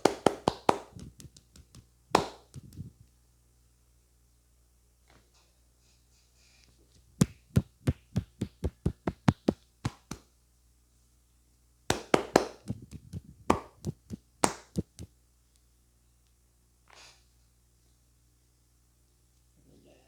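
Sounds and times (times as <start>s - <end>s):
hand slaps on head: 0.0s - 2.9s, 7.2s - 10.2s, 11.9s - 15.1s.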